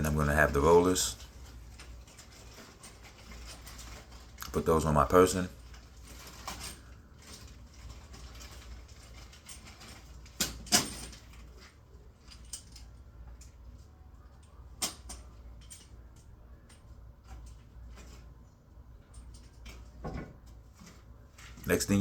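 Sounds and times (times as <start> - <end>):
tools knocking and clicking: 14.8 - 18.2.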